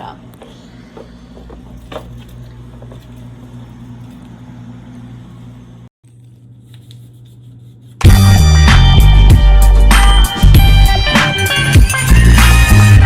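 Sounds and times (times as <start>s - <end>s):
low electrical hum: 0.0s - 8.0s.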